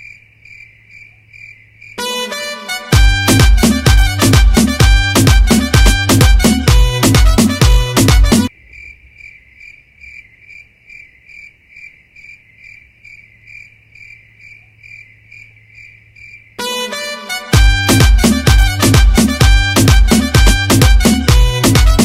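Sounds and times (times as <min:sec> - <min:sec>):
cricket chirping: 0:00.0 - 0:02.0, 0:08.5 - 0:16.6
loud dance music: 0:02.0 - 0:08.5, 0:16.6 - 0:22.0.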